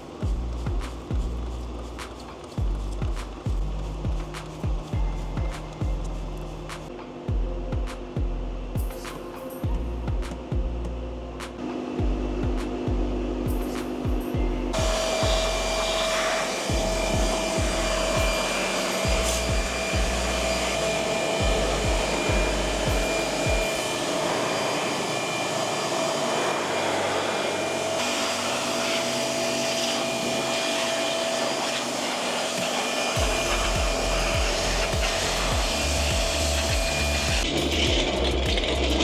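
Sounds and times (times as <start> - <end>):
background music with low beat: 0.0 - 26.1, 32.7 - 39.0
rushing water spray: 14.8 - 38.0.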